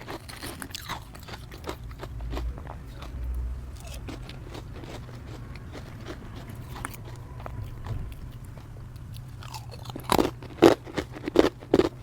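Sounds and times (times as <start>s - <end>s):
chewing and crunching ice: 0.0s - 12.0s
low steady hum: 0.0s - 12.0s.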